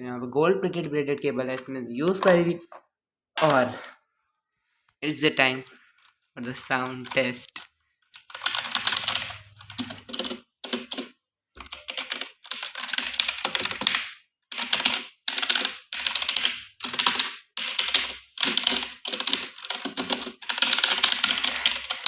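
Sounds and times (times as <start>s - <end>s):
clicky mechanical keyboard typing: 6.7s - 22.0s.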